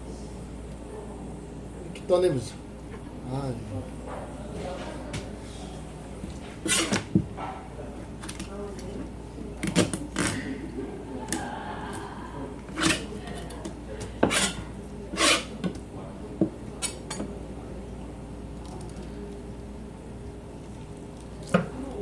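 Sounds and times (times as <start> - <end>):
knife scraping on cutting board: 6.6 - 7.1, 12.7 - 13.1, 14.1 - 15.6.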